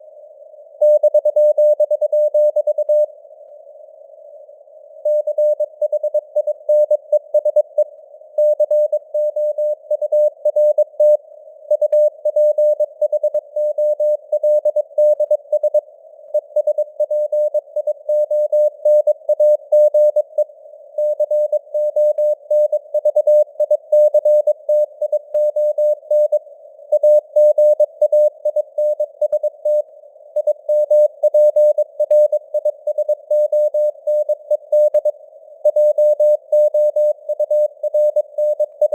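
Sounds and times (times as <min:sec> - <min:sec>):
morse code beeps: 0:35.7 - 0:38.9.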